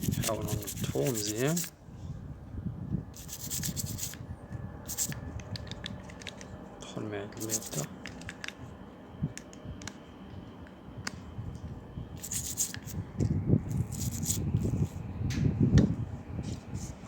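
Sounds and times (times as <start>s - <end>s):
hands rubbing: 7.4s - 7.9s.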